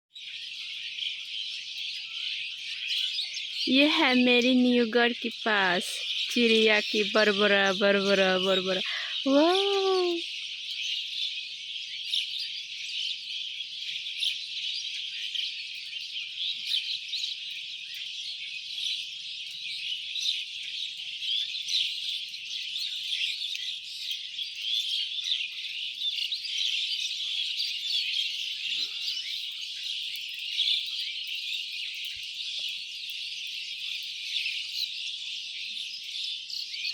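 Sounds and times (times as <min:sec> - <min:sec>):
flock of small birds chirping: 0:00.1 - 0:36.9.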